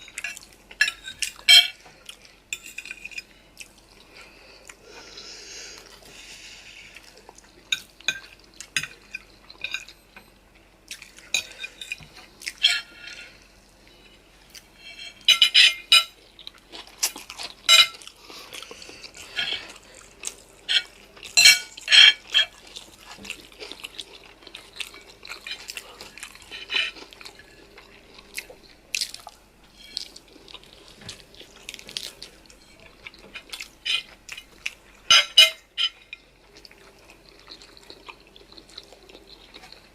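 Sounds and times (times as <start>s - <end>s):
utensils clinking: 11.3s - 13.4s, 20.6s - 22.6s
wet chewing: 16.1s - 35.0s, 36.0s - 39.9s.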